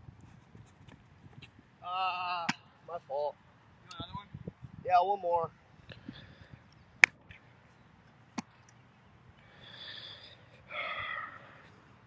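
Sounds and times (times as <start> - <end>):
breathy hisses: 9.4 - 11.8.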